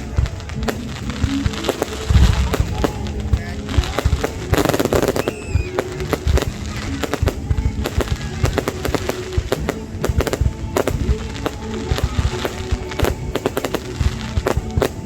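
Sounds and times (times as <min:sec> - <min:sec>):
fireworks bangs and crackles: 0:00.0 - 0:15.0
music playing: 0:00.0 - 0:15.0.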